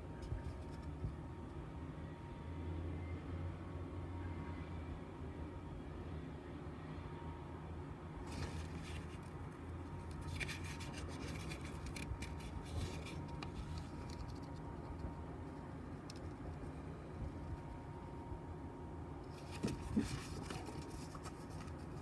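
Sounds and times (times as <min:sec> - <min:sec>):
steady low hum: 0:00.0 - 0:22.0
paper rustling: 0:08.3 - 0:09.4, 0:10.0 - 0:15.1, 0:19.3 - 0:22.0.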